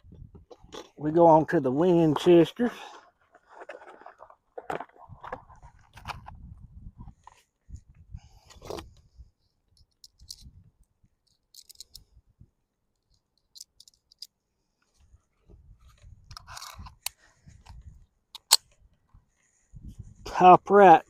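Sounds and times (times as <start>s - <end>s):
wind buffeting microphone: 0.0s - 0.7s, 5.0s - 9.3s, 10.3s - 10.8s, 15.4s - 18.1s, 19.6s - 20.4s
metallic clicks and rattles of pistol: 9.7s - 12.1s, 12.9s - 14.4s, 16.3s - 18.8s.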